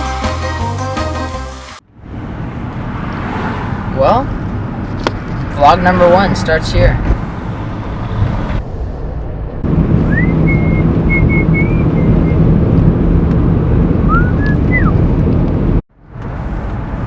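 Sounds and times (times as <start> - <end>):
car engine hum from inside: 9.6 - 17.0
high whistle-like tones: 10.0 - 12.5, 14.1 - 15.0.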